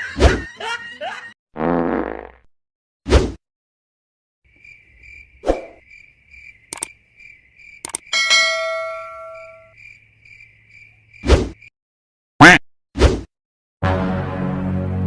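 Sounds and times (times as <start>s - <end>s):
crickets chirping: 4.5s - 11.7s
sharp clicks: 6.7s - 7.0s, 7.8s - 8.1s
bell ding: 8.2s - 9.7s.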